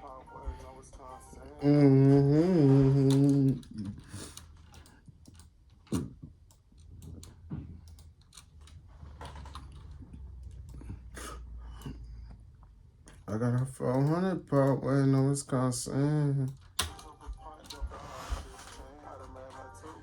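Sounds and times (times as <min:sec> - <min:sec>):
held vocal note: 0:00.0 - 0:03.9
keyboard and mouse clicks: 0:03.0 - 0:11.2, 0:13.0 - 0:15.4, 0:16.4 - 0:17.9.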